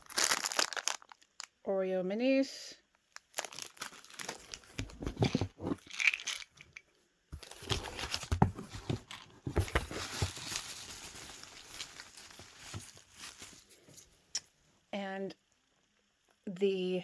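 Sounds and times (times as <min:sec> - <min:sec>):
packaging crinkling and rustling: 0:00.0 - 0:01.5, 0:03.1 - 0:06.8, 0:07.4 - 0:14.2.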